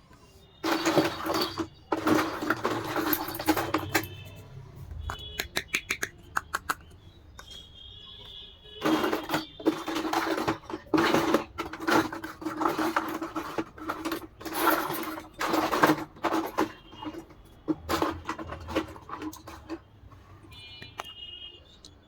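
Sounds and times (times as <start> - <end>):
rustling and scraping: 0.2 - 5.3, 8.8 - 20.6.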